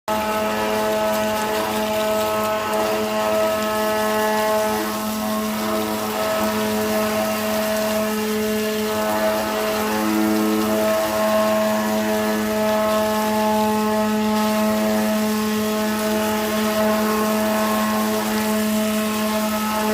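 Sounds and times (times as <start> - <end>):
router spindle humming and whining: 0.1 - 19.9.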